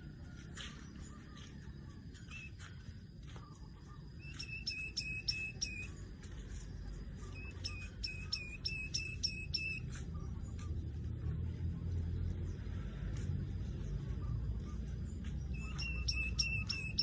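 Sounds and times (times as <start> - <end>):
weaver bird chipping call: 4.2 - 6.6, 7.3 - 10.1, 15.4 - 17.0.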